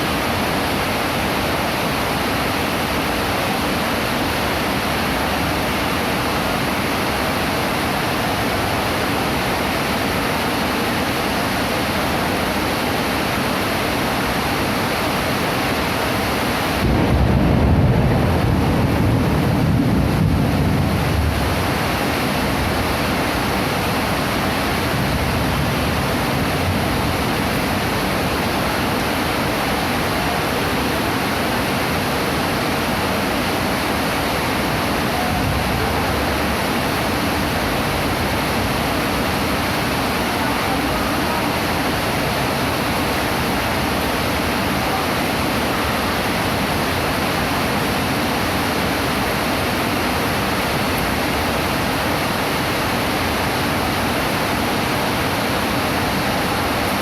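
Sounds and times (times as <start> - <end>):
heavy rain falling: 0.0 - 57.0
thunder rumbling: 16.7 - 23.2, 34.6 - 40.2.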